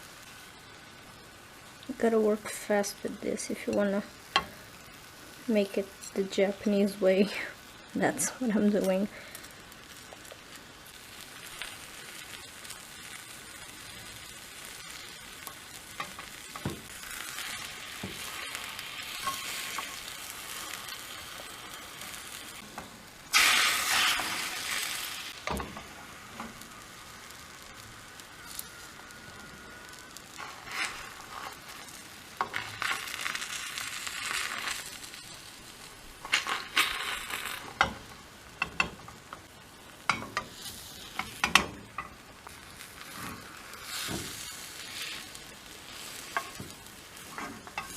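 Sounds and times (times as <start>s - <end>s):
egg sizzling in a pan: 0.0s - 47.9s
utensil tapping and scraping pan: 41.2s - 42.1s, 46.3s - 47.9s.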